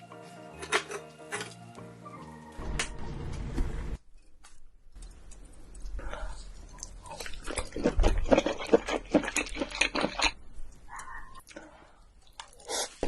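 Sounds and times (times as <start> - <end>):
chewing crunchy food: 5.0 - 13.0.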